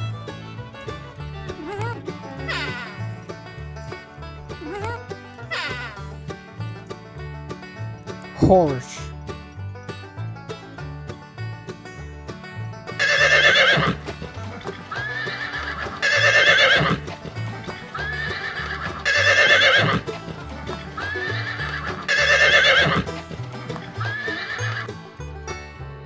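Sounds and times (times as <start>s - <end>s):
background music: 0.0s - 26.0s
horse neighing: 2.4s - 2.9s, 5.5s - 6.0s, 13.0s - 14.0s, 14.8s - 17.0s, 17.9s - 20.1s, 21.0s - 23.1s, 24.0s - 24.9s.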